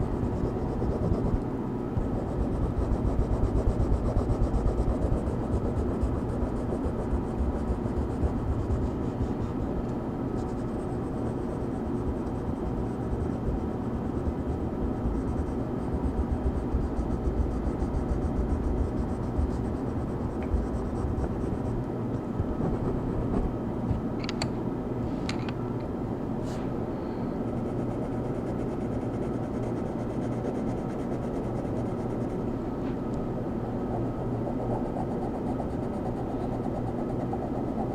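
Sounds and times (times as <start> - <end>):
colouring strokes scratching paper: 2.0 - 9.7, 10.3 - 21.8, 27.5 - 32.5, 33.9 - 37.9.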